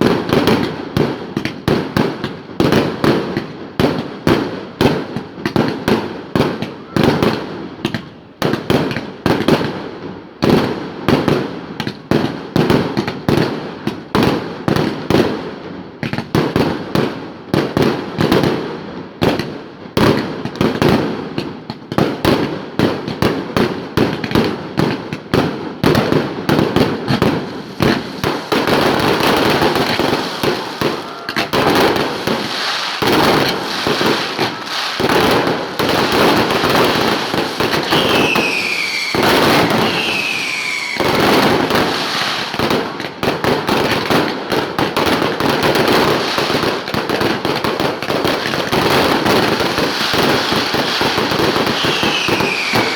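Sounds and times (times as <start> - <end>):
crackling firework barrage: 0.0 - 52.9
firework shell bursts and bangs: 26.0 - 52.9.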